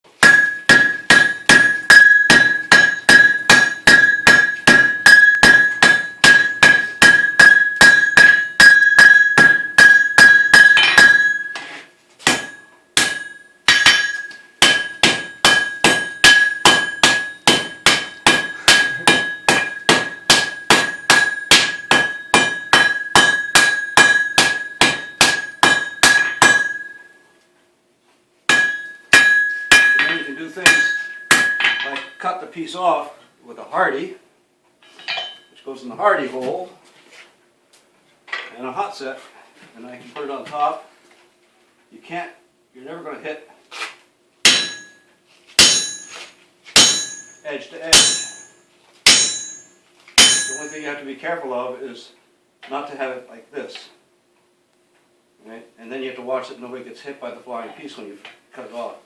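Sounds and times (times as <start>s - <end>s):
anvil ringing: 0.2s - 11.7s, 12.3s - 27.2s, 28.5s - 32.2s, 34.8s - 35.5s, 44.4s - 46.2s, 46.8s - 50.9s
hammer blows on steel over anvil: 45.6s - 50.8s.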